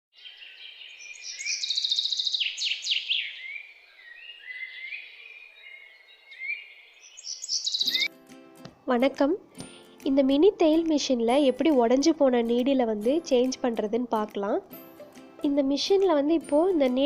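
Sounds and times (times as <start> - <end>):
birds chirping: 0.2 - 8.2.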